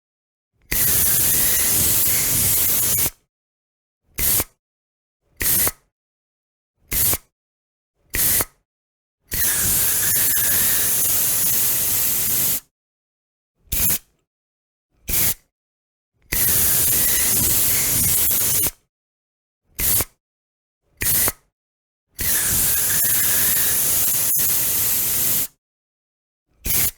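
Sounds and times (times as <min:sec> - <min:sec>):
aerosol spray can hissing: 0:00.8 - 0:03.1, 0:09.4 - 0:12.7, 0:16.4 - 0:18.7, 0:22.2 - 0:25.6.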